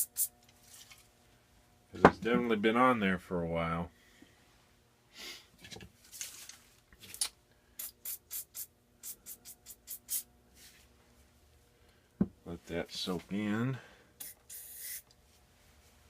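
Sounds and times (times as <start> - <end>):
aerosol spray hisses: 14.2 - 15.0.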